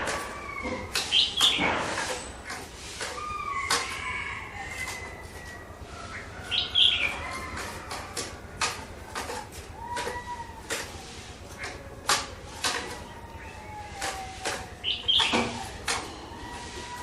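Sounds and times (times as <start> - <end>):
bird whistled calls: 0.3 - 1.7, 12.9 - 17.0.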